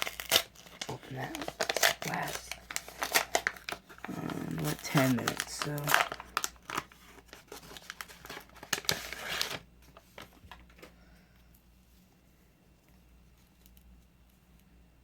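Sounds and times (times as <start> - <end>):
plastic packaging crinkling: 0.0 - 10.9
low room hum: 0.0 - 15.0.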